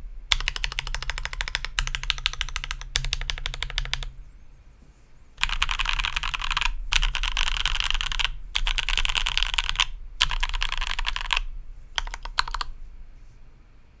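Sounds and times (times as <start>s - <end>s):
mechanical keyboard typing: 0.3s - 4.1s, 5.4s - 12.8s.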